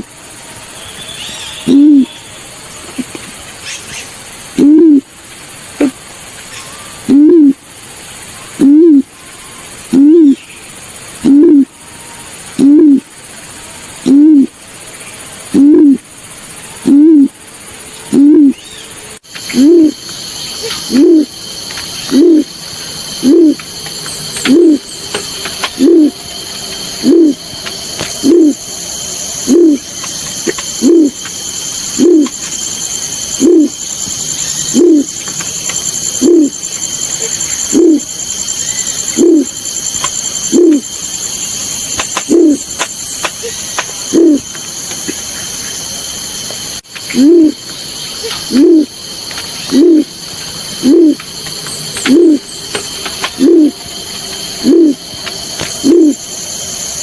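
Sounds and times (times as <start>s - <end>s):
high-pitched insect chorus: 0.0s - 57.0s
low hooting bird call: 0.7s - 2.4s, 5.8s - 7.6s, 8.4s - 10.6s, 11.2s - 13.1s, 15.5s - 16.1s, 16.7s - 17.4s, 18.0s - 21.4s, 22.0s - 42.8s, 43.4s - 44.6s, 47.1s - 49.0s, 49.6s - 51.2s, 52.0s - 53.9s, 54.5s - 56.3s.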